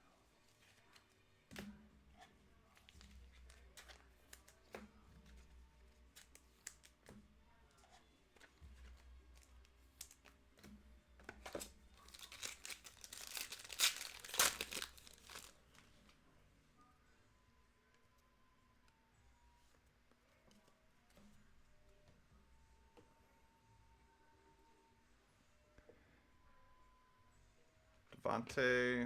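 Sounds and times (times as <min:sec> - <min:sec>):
trading cards clicking: 0:11.4 - 0:15.5
foil pack tearing: 0:11.6 - 0:15.6.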